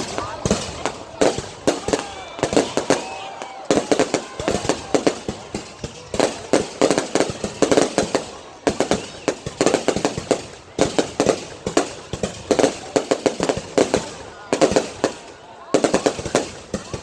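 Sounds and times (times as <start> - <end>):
fireworks bangs and crackles: 0.0 - 17.0.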